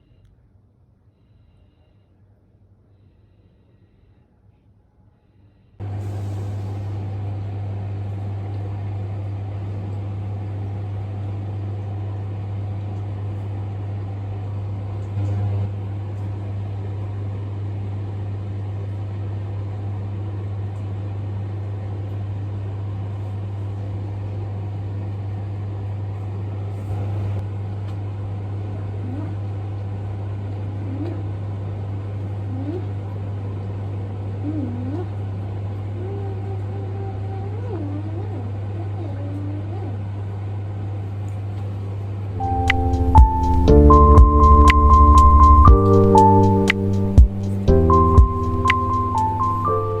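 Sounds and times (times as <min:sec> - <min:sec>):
low mechanical hum: 0:00.0 - 0:50.0
faint rising chirps: 0:42.4 - 0:50.0.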